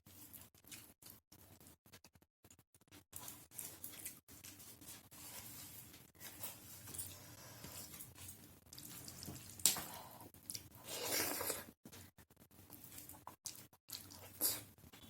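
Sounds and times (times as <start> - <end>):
wet chewing and squishing: 0.0 - 1.7, 7.6 - 11.8, 12.5 - 14.8.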